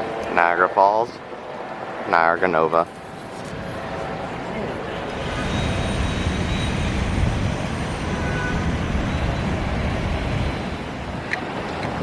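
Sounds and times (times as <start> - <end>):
bus engine rumble: 2.8 - 12.0.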